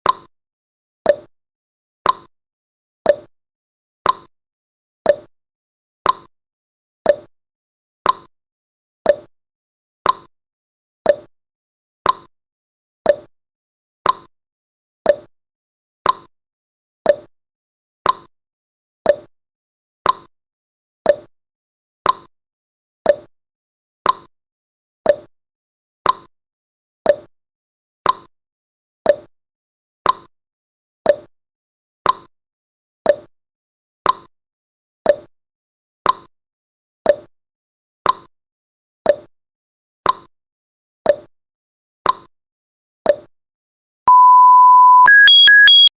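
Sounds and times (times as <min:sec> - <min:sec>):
timer ticking: 0:44.1 - 0:45.9.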